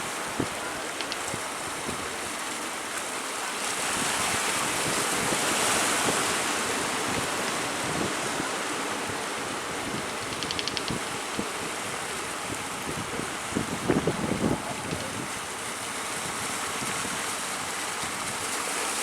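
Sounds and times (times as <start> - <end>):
surf breaking and washing in: 0.0 - 19.0
strong wind on microphone: 3.9 - 17.3.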